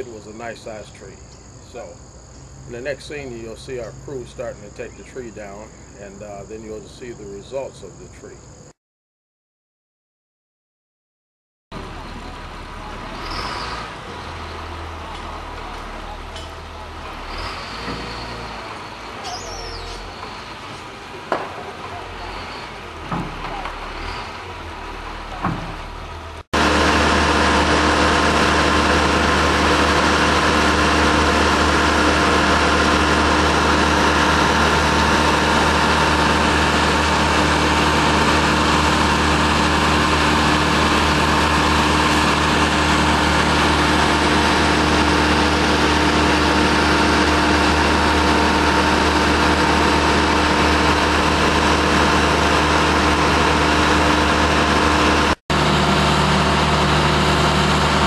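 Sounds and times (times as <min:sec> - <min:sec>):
outdoor background: 0:00.0 - 0:08.8, 0:11.7 - 0:58.0
engine running steadily: 0:11.7 - 0:58.0.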